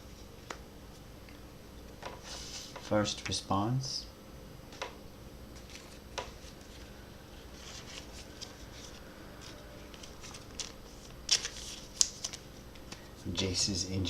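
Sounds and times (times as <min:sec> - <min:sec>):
cards rustling and sliding: 0:02.1 - 0:03.4, 0:05.5 - 0:13.2.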